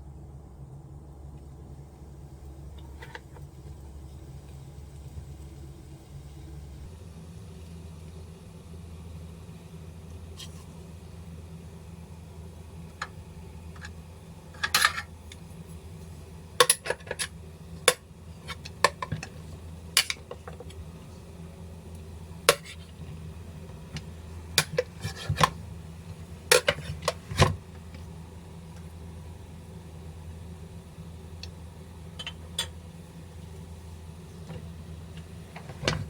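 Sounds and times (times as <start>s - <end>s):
steady low hum: 0.0s - 36.0s
metal kitchenware clinking: 14.6s - 15.1s, 26.5s - 27.1s.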